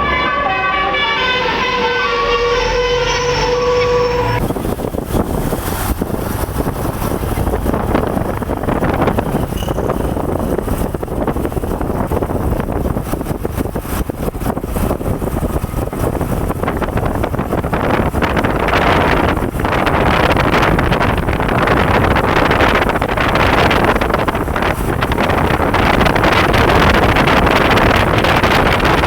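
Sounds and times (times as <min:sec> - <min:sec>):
bus driving past: 0:00.0 - 0:12.2
wind buffeting microphone: 0:00.0 - 0:29.0.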